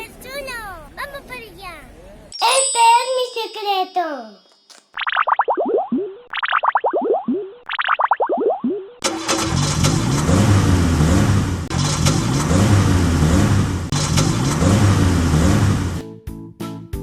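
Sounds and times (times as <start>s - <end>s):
engine revving up and down: 9.0s - 16.0s.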